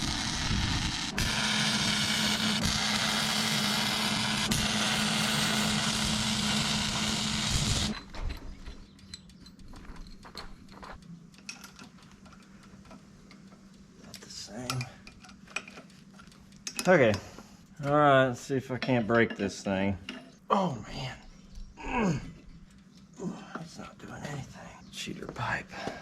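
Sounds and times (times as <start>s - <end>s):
power tool running: 0.0s - 8.1s
metal parts clinking: 7.9s - 12.5s.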